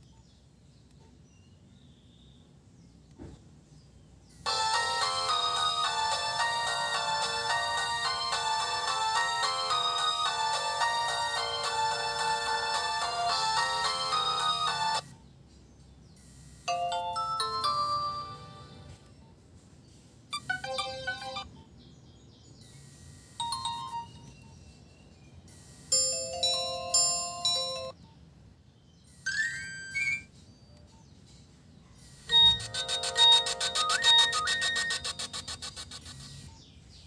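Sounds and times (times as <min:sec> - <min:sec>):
mobile phone ringtones: 0:04.5 - 0:15.0, 0:16.7 - 0:19.0, 0:20.4 - 0:21.5, 0:23.2 - 0:24.3, 0:32.3 - 0:36.2.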